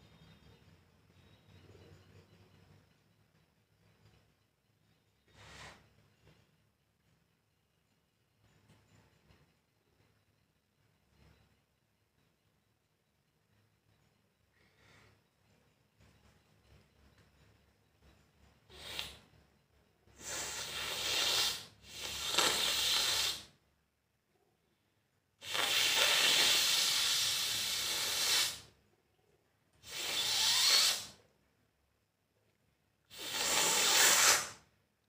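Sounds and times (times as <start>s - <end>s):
person blowing nose: 18.7s - 19.2s, 20.2s - 23.6s, 25.4s - 28.7s, 29.8s - 31.2s, 33.1s - 34.7s.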